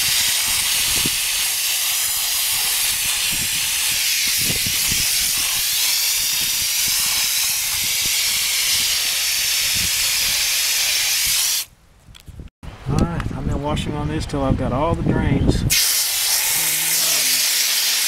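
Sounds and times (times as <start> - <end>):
hose water jet hissing: 0.0 - 11.7, 15.7 - 18.0.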